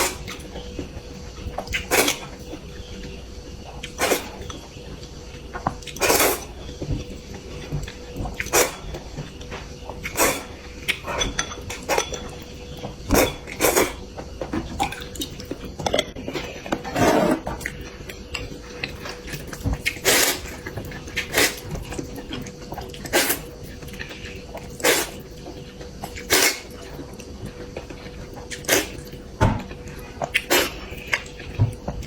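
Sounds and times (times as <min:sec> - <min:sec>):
faint steady hum: 0:00.0 - 0:32.0
chewing and mouth sounds: 0:07.0 - 0:12.4, 0:17.5 - 0:31.9.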